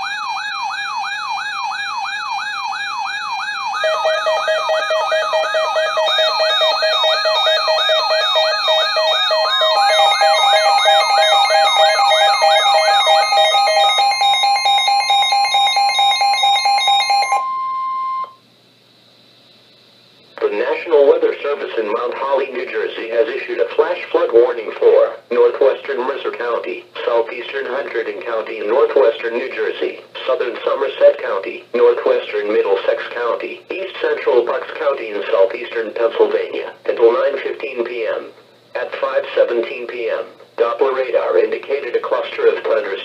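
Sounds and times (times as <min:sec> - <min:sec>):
rising electronic alert sweep: 0:00.0 - 0:17.8
steady alert tones: 0:00.0 - 0:18.3
pulsing lower beep: 0:03.6 - 0:18.4.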